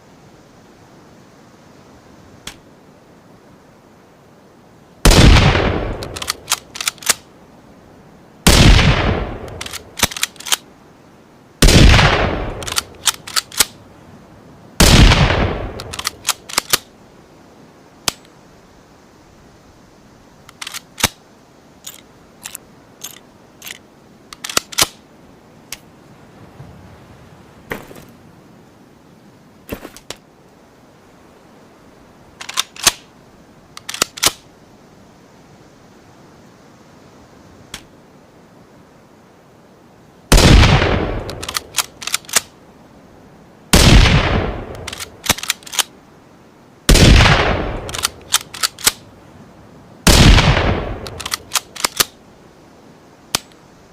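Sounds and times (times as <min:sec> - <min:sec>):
rifle shots with echo: 0:05.1 - 0:06.4, 0:08.5 - 0:10.2, 0:11.6 - 0:13.0, 0:14.8 - 0:16.8, 0:40.3 - 0:41.5, 0:43.8 - 0:45.5, 0:46.9 - 0:49.0, 0:50.1 - 0:52.1
rifle bolt metallic clicks: 0:05.9 - 0:07.2, 0:09.4 - 0:10.6, 0:12.5 - 0:13.8, 0:15.7 - 0:16.9, 0:20.4 - 0:21.2, 0:21.8 - 0:25.0, 0:32.4 - 0:33.1, 0:33.7 - 0:34.4, 0:41.2 - 0:42.5, 0:44.7 - 0:45.9, 0:47.8 - 0:49.0, 0:51.0 - 0:52.2.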